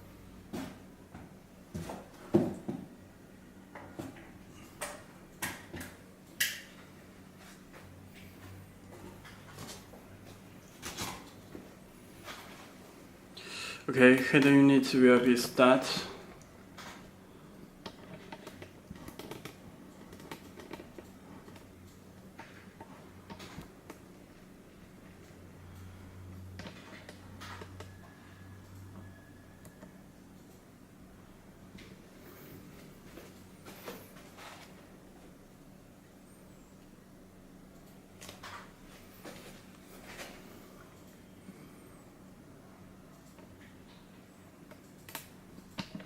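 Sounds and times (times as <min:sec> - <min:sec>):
connectors clicking together: 0:44.7 - 0:46.0.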